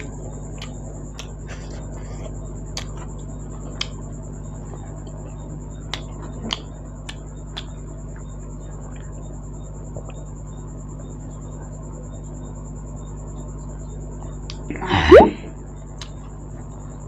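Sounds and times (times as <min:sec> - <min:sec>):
lip smacks and mouth clicks: 0:00.0 - 0:04.1, 0:05.9 - 0:08.2
electrical hum: 0:00.0 - 0:17.0.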